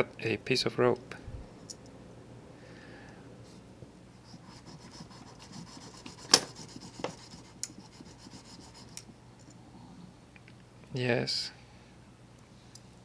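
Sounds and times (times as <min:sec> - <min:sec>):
small blade sawing rope: 0:04.2 - 0:09.1
sharp snap: 0:06.3 - 0:06.5.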